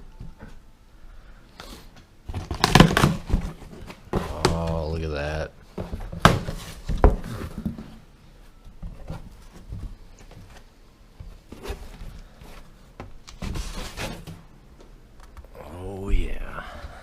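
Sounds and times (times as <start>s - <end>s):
rustling and scraping: 1.5s - 5.0s, 5.6s - 14.5s.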